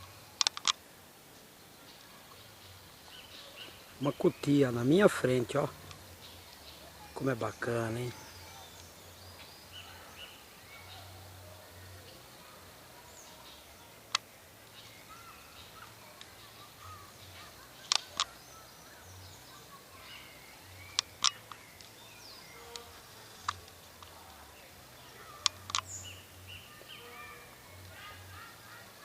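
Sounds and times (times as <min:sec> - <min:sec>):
steady background hiss: 0:00.0 - 0:29.0
sharp clicks: 0:00.4 - 0:00.8, 0:17.8 - 0:18.4, 0:20.9 - 0:22.0, 0:22.7 - 0:24.2, 0:25.4 - 0:25.9
faint bird chirps: 0:01.4 - 0:29.0.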